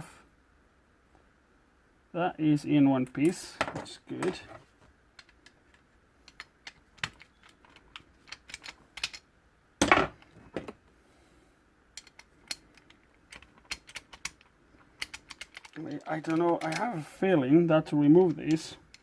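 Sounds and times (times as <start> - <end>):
metal tools clicking and tapping: 6.3 - 9.2, 12.0 - 16.9.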